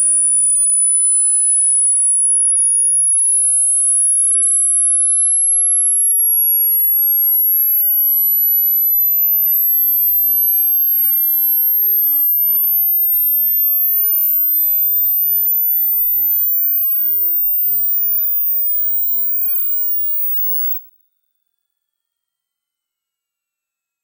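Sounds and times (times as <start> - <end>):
high-pitched rising test tone: 8.6 - 20.8.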